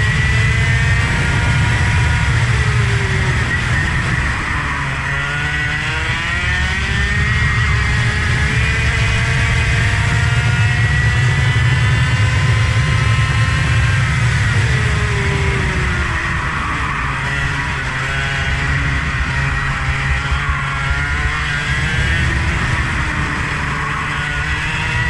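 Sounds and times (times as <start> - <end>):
vehicle engine running hard: 0.0 - 25.0.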